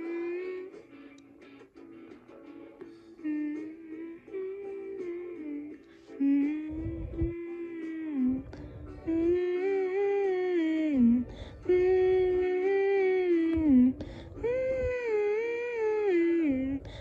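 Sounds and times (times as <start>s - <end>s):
woman humming: 0.0s - 0.8s, 3.2s - 16.9s.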